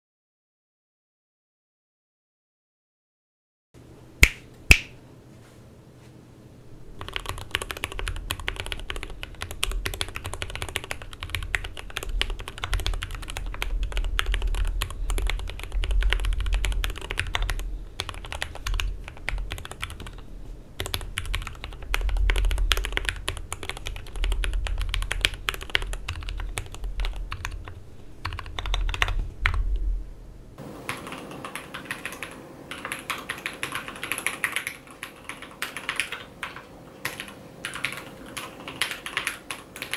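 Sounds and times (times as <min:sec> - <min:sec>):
mechanical keyboard typing: 0:07.0 - 0:20.2, 0:20.8 - 0:29.6, 0:30.9 - 0:39.9.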